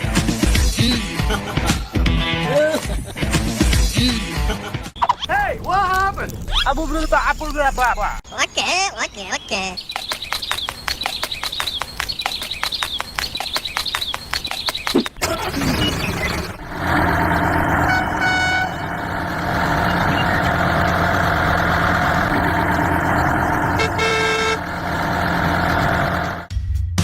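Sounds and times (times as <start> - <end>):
rapid even ticking: 9.8 - 26.5
vehicle engine running: 15.2 - 26.5
horn toots: 16.5 - 20.8, 22.1 - 26.5.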